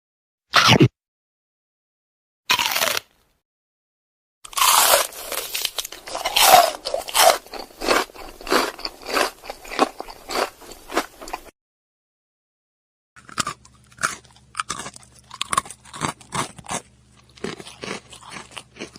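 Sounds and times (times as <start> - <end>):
crunchy food chewing: 2.5 - 3.1, 4.5 - 11.5, 13.2 - 18.9.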